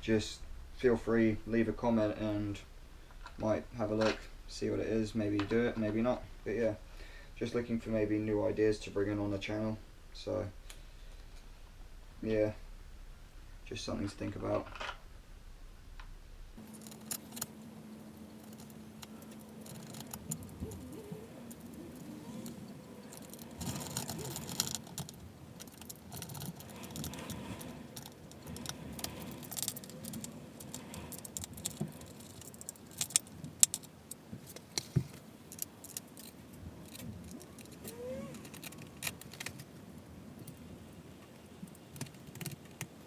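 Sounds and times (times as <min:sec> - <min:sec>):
small metal parts clinking: 0:16.6 - 0:40.6.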